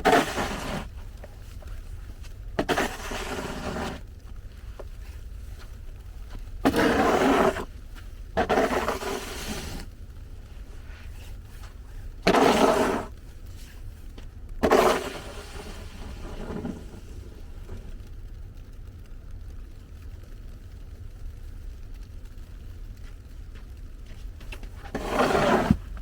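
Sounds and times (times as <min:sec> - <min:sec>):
harsh scraping: 0:00.0 - 0:05.8, 0:06.6 - 0:09.9, 0:10.8 - 0:13.2, 0:14.6 - 0:18.0, 0:24.6 - 0:26.0
steady low rumble: 0:00.0 - 0:26.0.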